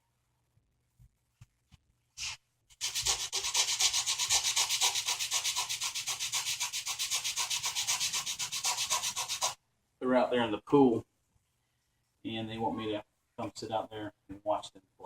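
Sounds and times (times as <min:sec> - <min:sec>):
sandpaper rubbing wood: 0:02.2 - 0:09.6.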